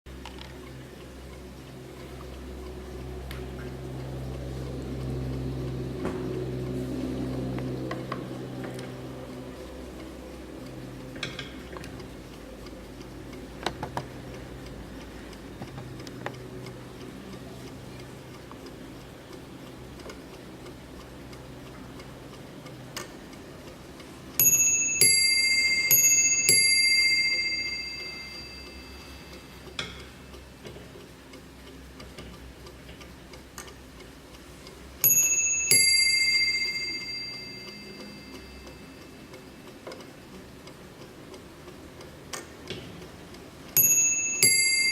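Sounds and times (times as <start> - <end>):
clock ticking softly: 0.1 - 44.9
mantel clock chiming ding-dong: 24.4 - 30.0, 35.0 - 39.2, 43.8 - 44.9.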